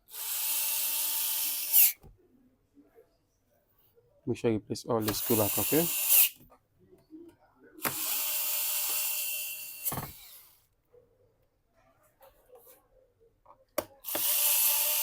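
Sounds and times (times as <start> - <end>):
electric screwdriver whining: 0.1 - 2.0, 5.0 - 6.4, 7.8 - 10.5, 14.1 - 15.0.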